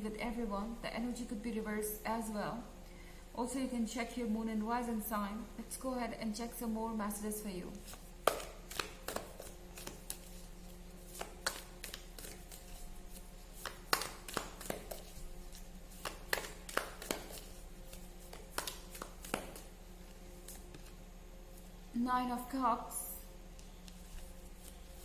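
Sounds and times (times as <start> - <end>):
faint steady hum: 0.0 - 25.0
cards shuffling: 7.8 - 19.7, 20.3 - 21.7, 23.6 - 25.0.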